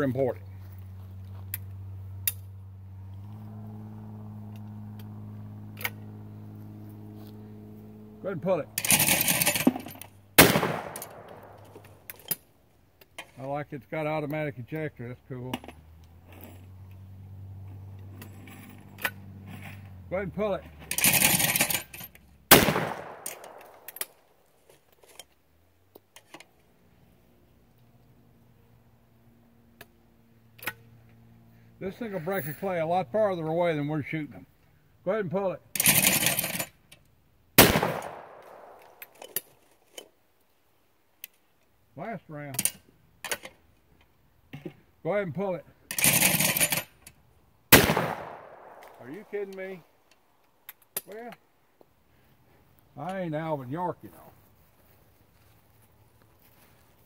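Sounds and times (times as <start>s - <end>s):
low engine hum: 0.0s - 12.1s, 14.6s - 23.9s
shotgun metallic clicks: 8.8s - 13.3s, 20.9s - 24.2s, 37.6s - 40.1s
shotgun shot with echo: 10.4s - 11.6s, 22.5s - 23.8s, 37.6s - 38.8s, 47.7s - 48.8s
shotgun action clicking: 22.5s - 24.2s.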